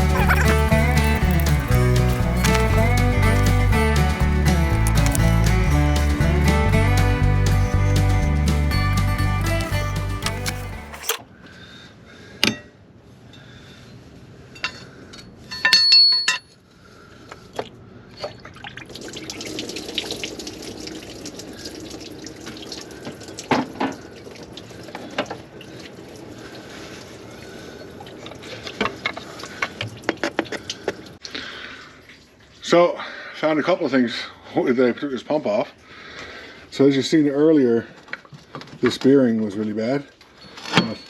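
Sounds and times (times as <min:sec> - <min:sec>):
metal clicks: 0:09.5 - 0:11.2
ringing metal clink: 0:15.5 - 0:16.6
liquid running and dripping: 0:18.4 - 0:31.2.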